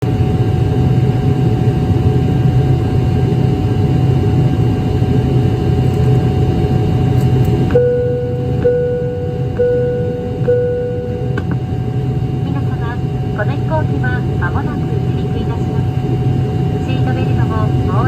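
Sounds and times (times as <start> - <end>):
propeller engines droning: 0.0 - 18.0
electronic tone: 7.7 - 11.6.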